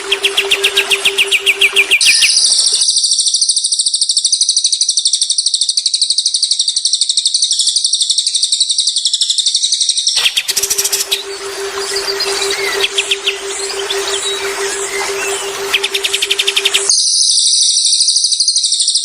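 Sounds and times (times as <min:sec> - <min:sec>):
songbird high-pitched trill: 0:00.0 - 0:02.9, 0:10.2 - 0:18.0.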